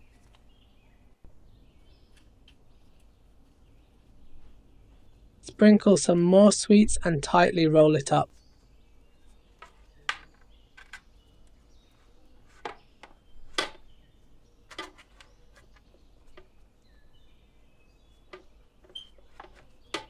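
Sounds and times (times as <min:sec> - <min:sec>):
faint bird chirps: 0:08.2 - 0:20.0.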